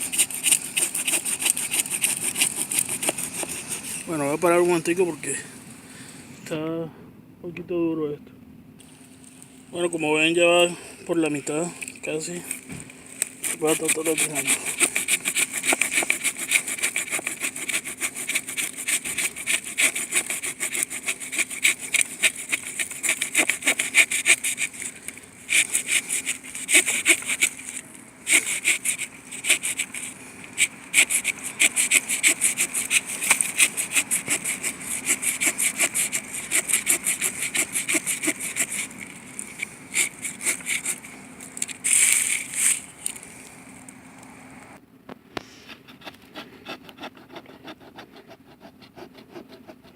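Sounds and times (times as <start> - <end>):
folding saw cutting wood: 0.0 - 4.4, 13.4 - 42.8.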